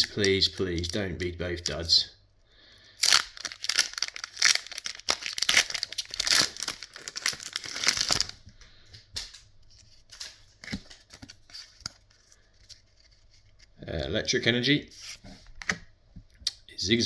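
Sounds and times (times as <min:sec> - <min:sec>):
foil wrapper tearing and crinkling: 0:00.0 - 0:01.9, 0:02.9 - 0:08.4, 0:09.2 - 0:13.3
cards rustling and tapping: 0:09.0 - 0:13.8.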